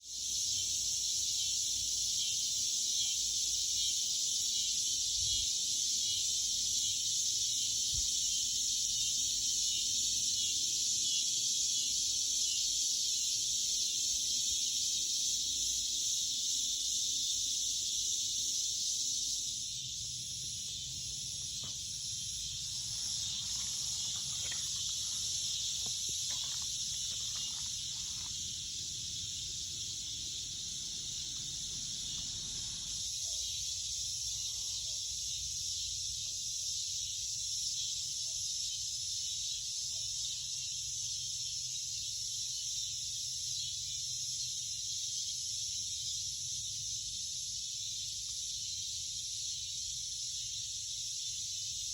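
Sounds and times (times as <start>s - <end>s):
insect chorus drone: 0.0s - 51.9s.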